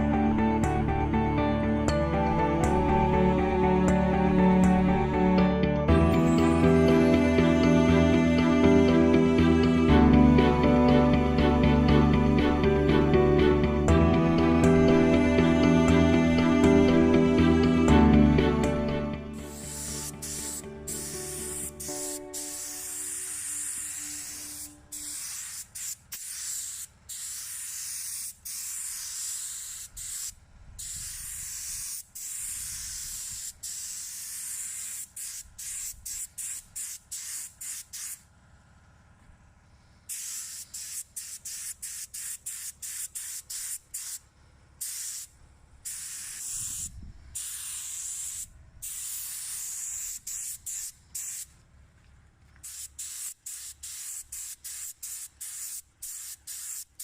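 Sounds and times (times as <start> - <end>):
air spray gun hissing: 19.4 - 38.3, 40.1 - 51.6, 52.6 - 57.0.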